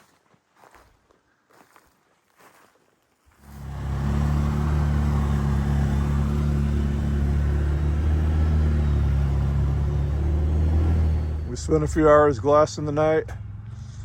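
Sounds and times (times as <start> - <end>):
vehicle engine droning: 3.3 - 14.0.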